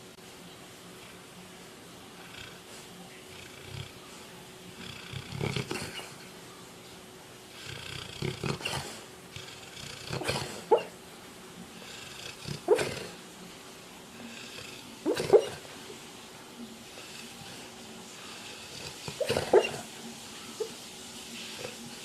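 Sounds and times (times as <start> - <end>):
dog yipping and whimpering: 15.1 - 15.6, 19.2 - 19.8.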